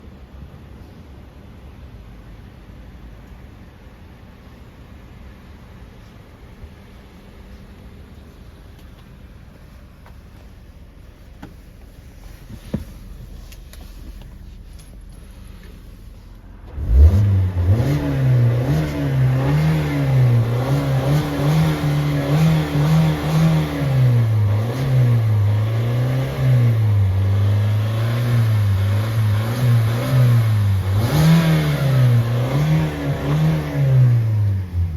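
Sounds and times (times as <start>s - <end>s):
car engine revving: 15.0s - 34.9s.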